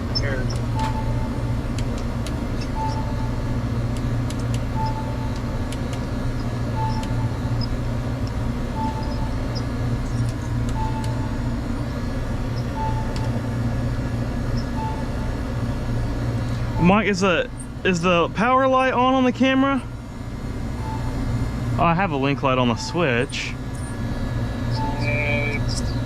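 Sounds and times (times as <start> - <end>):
low machine hum: 0.0 - 26.0
high electronic beep: 0.2 - 1.6, 2.6 - 3.5, 4.7 - 5.4, 6.5 - 7.8, 8.7 - 15.5, 16.7 - 17.3, 20.8 - 21.3, 24.7 - 26.0.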